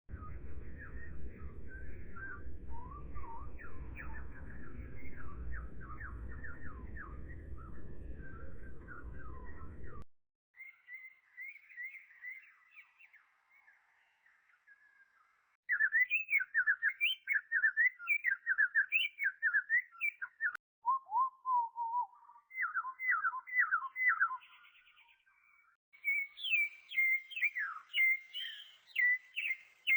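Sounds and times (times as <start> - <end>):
songbird singing: 0.1 - 10.0, 10.6 - 29.9.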